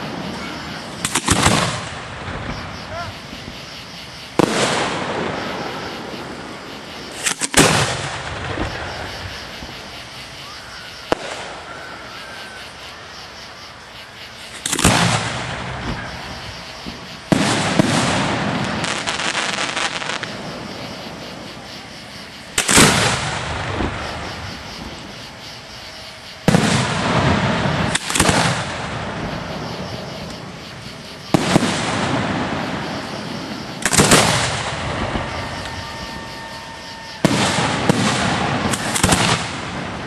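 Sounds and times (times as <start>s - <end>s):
fireworks booming: 0.0s - 12.8s, 13.8s - 40.0s
fireworks crackling: 0.0s - 40.0s.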